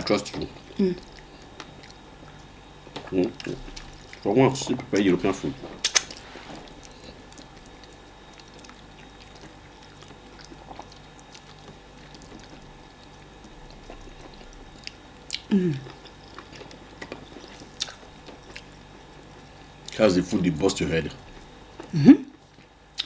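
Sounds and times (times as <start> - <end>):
quiet chewing: 0.0 - 23.0
mouth and utensil clicks: 5.8 - 6.2.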